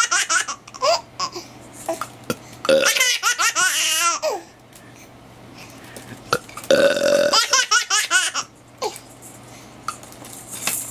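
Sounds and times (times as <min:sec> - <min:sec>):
baby laughing: 0:00.0 - 0:02.0, 0:02.8 - 0:04.4, 0:07.3 - 0:09.0
adult burping: 0:02.7 - 0:03.0, 0:06.3 - 0:07.5.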